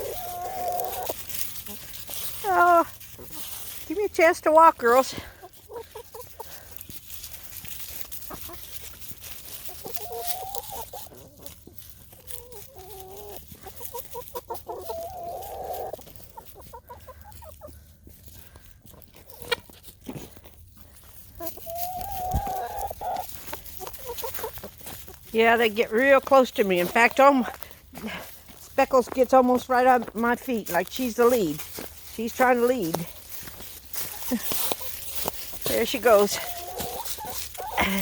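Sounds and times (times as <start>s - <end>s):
drawn-out hen calls: 0.0s - 38.0s
hens clucking: 0.0s - 38.0s.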